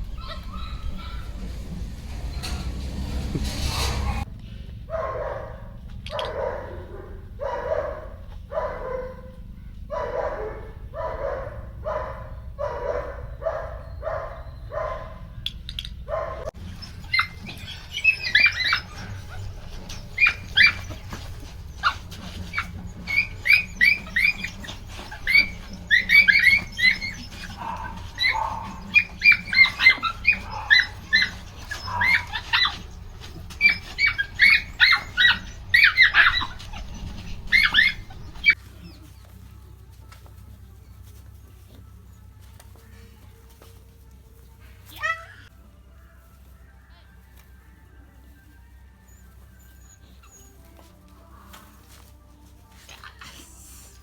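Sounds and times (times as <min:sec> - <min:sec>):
puppies yelping: 0:00.0 - 0:04.3, 0:05.0 - 0:15.4, 0:16.0 - 0:39.3, 0:49.0 - 0:51.6
dog barking: 0:04.9 - 0:15.3, 0:16.1 - 0:38.6.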